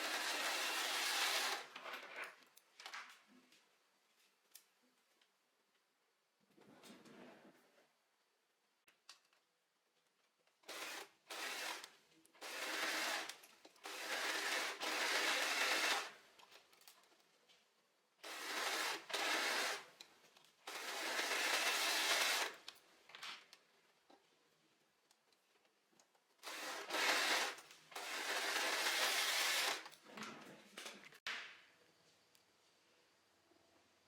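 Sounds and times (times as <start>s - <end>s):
sewing machine stitching: 0.0s - 1.8s, 10.6s - 16.2s, 18.2s - 19.9s, 20.7s - 22.6s, 26.4s - 30.0s.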